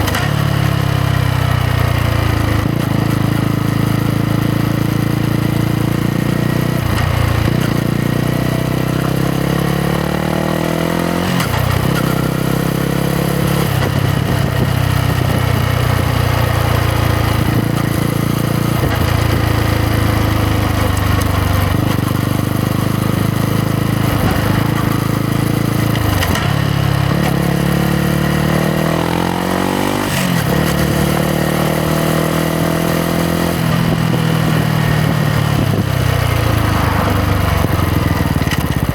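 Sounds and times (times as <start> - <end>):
motorcycle engine revving: 0.0 - 38.9.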